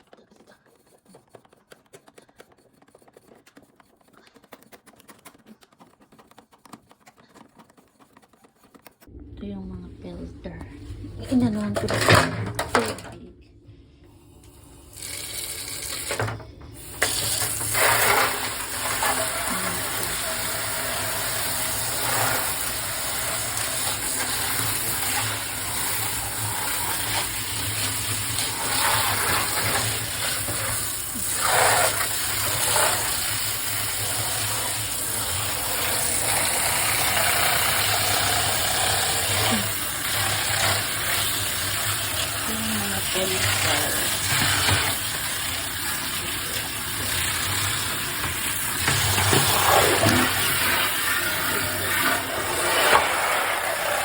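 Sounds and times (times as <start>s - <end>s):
low steady hum: 9.1s - 17.1s
water running: 14.2s - 54.0s.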